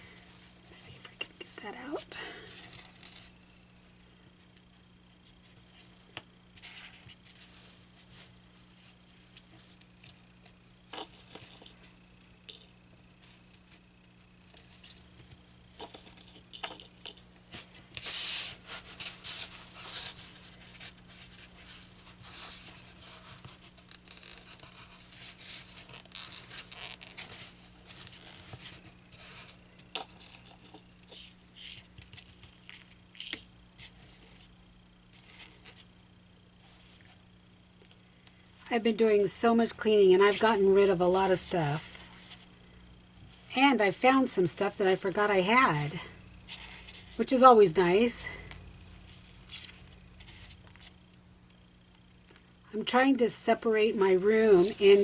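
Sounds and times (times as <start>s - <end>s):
steady low hum: 0.0s - 55.0s
fabric rustling and scraping: 54.4s - 55.0s.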